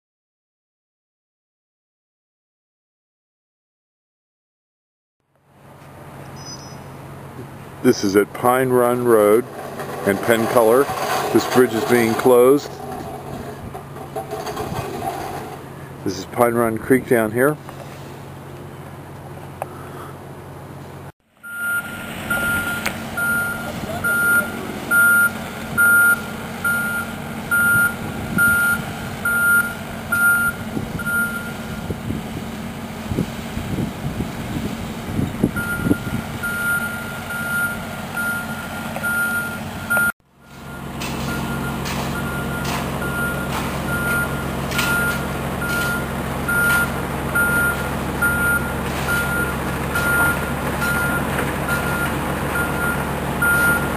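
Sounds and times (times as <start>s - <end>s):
truck engine running: 5.3s - 53.9s
truck backup alarm beeping: 21.4s - 32.0s, 35.5s - 53.9s.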